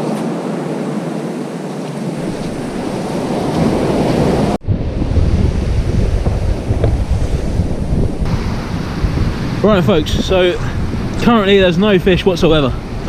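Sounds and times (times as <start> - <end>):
sea surf breaking: 0.0 - 13.0
wind buffeting microphone: 0.0 - 13.0.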